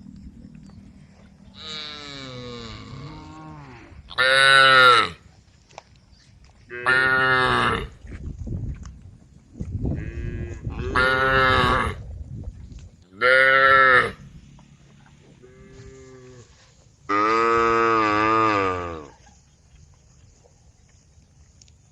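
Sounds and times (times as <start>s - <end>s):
cows mooing: 1.4s - 5.2s, 6.7s - 8.0s, 10.0s - 12.0s, 13.2s - 14.3s, 15.3s - 19.2s.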